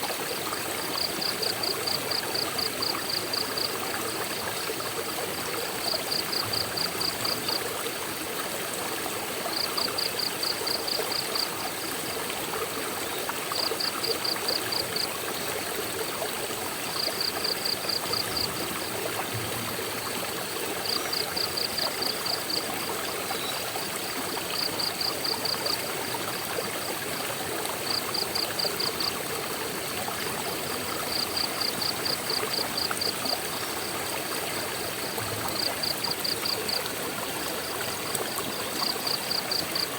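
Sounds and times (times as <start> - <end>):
water rushing: 0.0 - 39.9.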